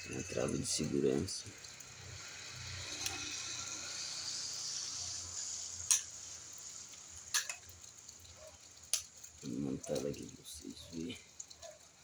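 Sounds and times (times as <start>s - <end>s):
faint steady hiss: 0.0s - 12.0s.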